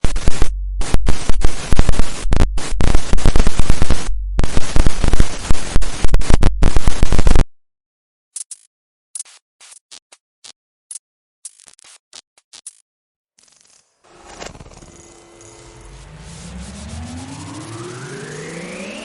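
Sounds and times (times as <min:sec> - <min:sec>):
bursts of tv static: 0:00.0 - 0:07.4.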